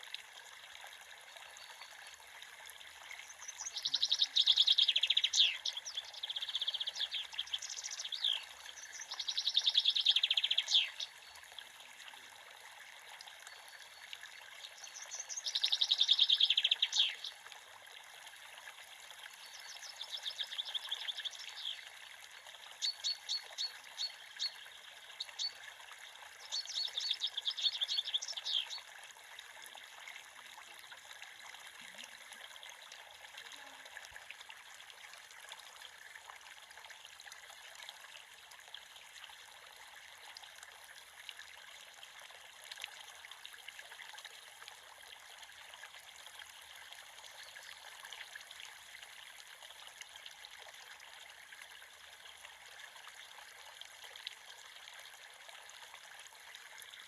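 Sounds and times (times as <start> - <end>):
songbird trilling: 3.6 - 11.1, 15.0 - 17.3.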